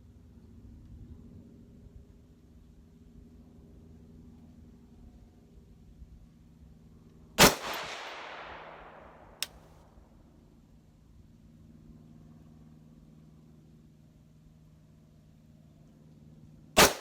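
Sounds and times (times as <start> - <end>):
rifle shot with echo: 7.4 - 9.6, 16.8 - 17.0.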